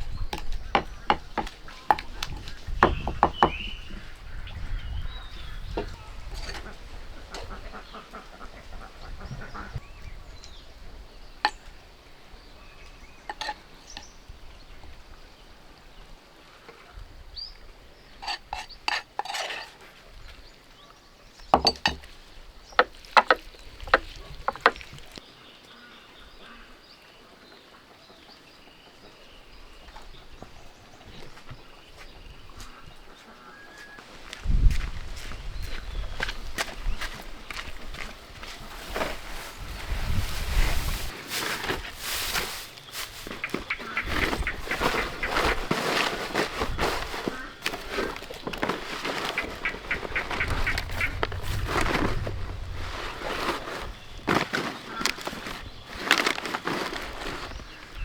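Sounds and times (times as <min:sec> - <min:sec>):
ducks calling: 0:05.1 - 0:09.9, 0:43.1 - 0:56.0
sharp knocks and clatter: 0:21.6 - 0:22.1, 0:22.8 - 0:24.9.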